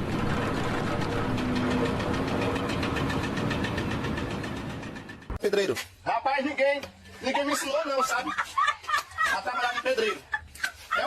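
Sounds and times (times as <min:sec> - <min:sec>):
heavy engine pulsing: 0:00.0 - 0:05.4.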